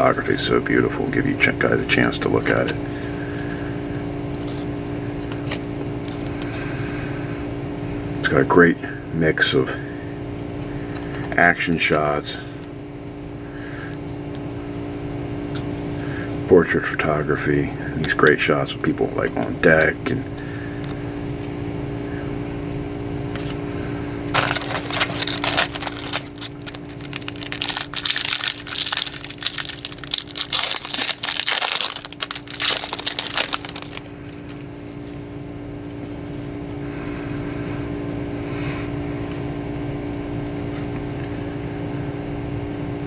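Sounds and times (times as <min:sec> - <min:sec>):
low hum: 0:17.6 - 0:39.3
foil wrapper crinkling and tearing: 0:24.3 - 0:35.2.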